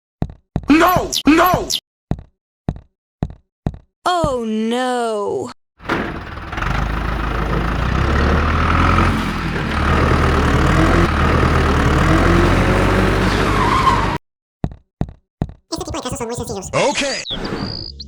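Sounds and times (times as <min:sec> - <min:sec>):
vehicle engine running: 0:05.8 - 0:13.6.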